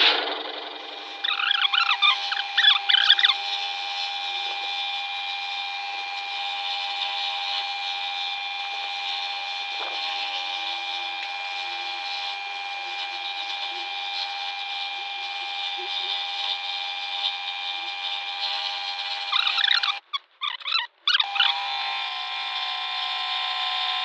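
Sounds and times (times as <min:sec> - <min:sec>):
scroll saw running: 0:00.0 - 0:24.0
short squeaks: 0:01.2 - 0:03.4, 0:18.4 - 0:21.6.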